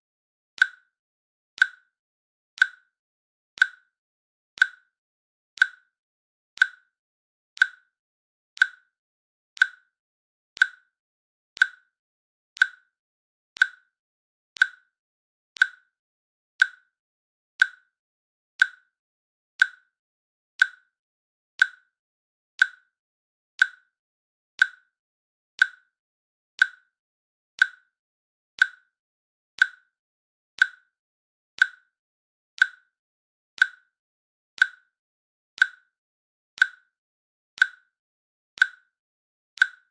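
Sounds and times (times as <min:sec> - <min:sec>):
countdown timer clicking: 0:11.6 - 0:11.9, 0:35.6 - 0:35.9, 0:37.6 - 0:37.9, 0:39.6 - 0:39.9.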